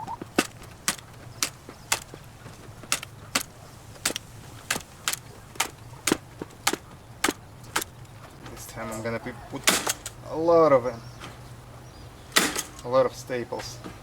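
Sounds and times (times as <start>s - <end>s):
staple gun snapping: 2.9s - 7.9s.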